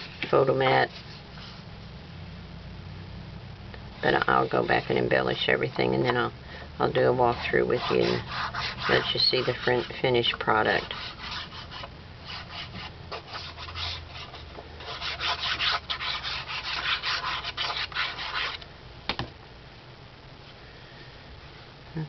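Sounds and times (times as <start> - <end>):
paper sliding and rubbing: 0.0 - 1.9.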